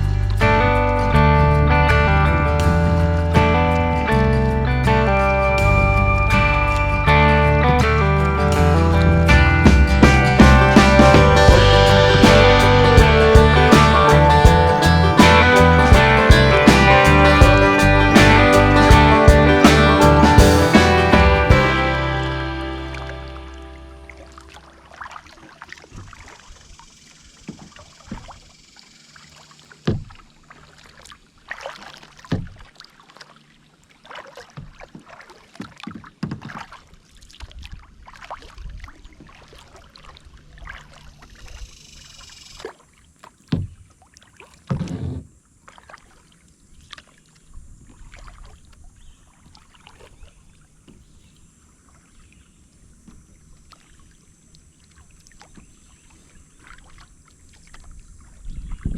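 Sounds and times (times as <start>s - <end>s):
loud thumps: 7.8s - 23.0s
paddle splashing in water: 7.8s - 58.9s.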